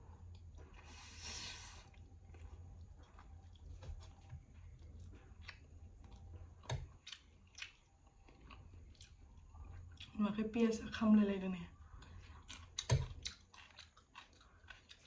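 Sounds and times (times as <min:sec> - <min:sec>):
steady low hum: 0:00.0 - 0:15.0
chewing mouth noises: 0:01.8 - 0:10.2, 0:11.8 - 0:15.0.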